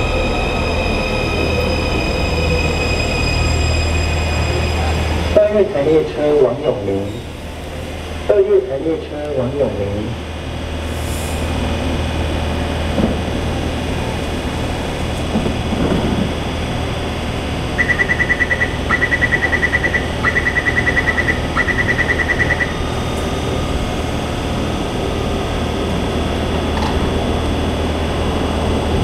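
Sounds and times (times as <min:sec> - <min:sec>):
train humming: 0:00.0 - 0:29.0
rapid high-pitched warning beeps: 0:17.8 - 0:22.8.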